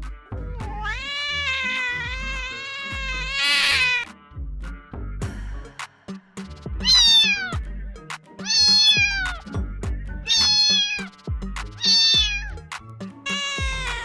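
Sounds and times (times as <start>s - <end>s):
background music with steady beat: 0.0s - 14.0s
kitten meowing: 0.5s - 4.1s, 6.8s - 7.6s, 8.4s - 9.5s, 10.3s - 11.1s, 11.8s - 12.6s, 13.3s - 14.0s.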